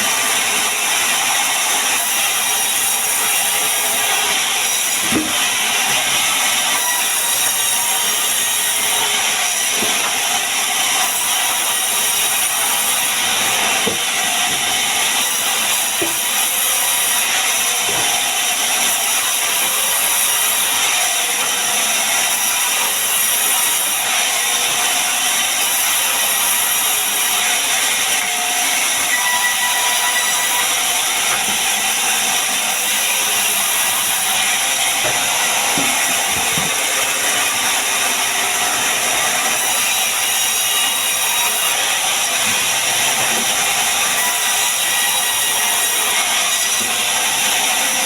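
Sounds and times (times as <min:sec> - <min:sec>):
power tool cutting wood: 0:00.0 - 0:48.0.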